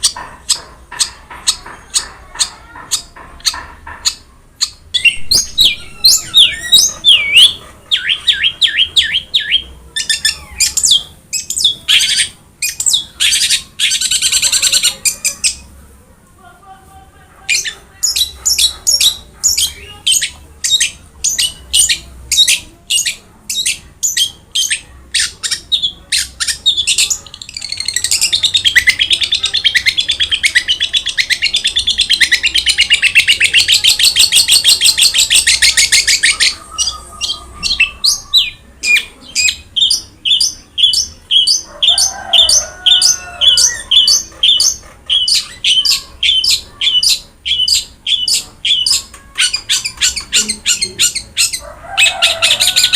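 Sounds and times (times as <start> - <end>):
shrike singing: 4.9 - 15.6.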